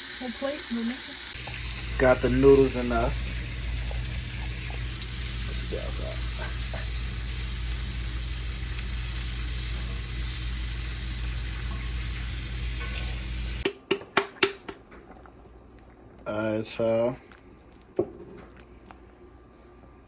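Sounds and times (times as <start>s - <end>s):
food sizzling in a pan: 0.0s - 13.6s.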